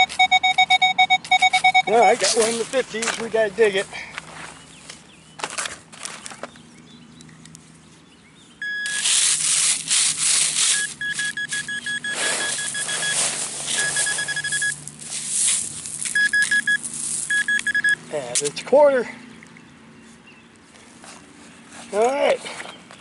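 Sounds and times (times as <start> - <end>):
metal detector pinpointer beeping: 0.0 - 2.6, 8.6 - 9.4, 10.5 - 14.9, 16.0 - 18.1
scraping in soil and grass: 1.5 - 6.4, 8.8 - 18.5, 20.8 - 22.8.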